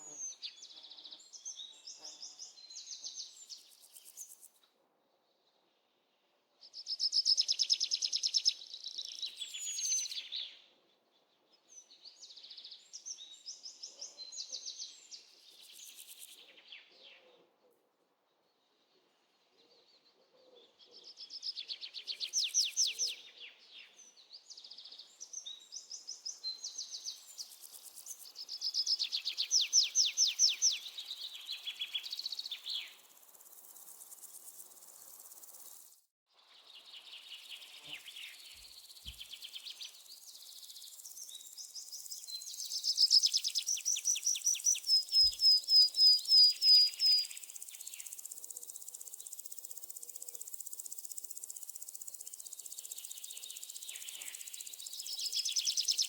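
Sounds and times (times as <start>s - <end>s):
bird singing trilled notes: 37.4s - 48.4s.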